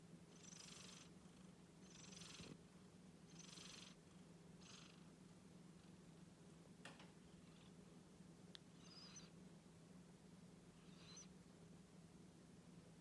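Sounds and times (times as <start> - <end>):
cat purring: 0.3 - 2.6, 3.3 - 6.0, 10.8 - 11.3.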